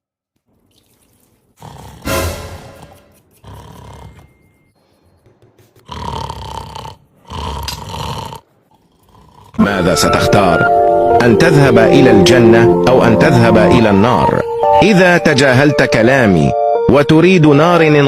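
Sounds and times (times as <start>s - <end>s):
person snoring: 3.4s - 4.3s, 5.8s - 9.9s.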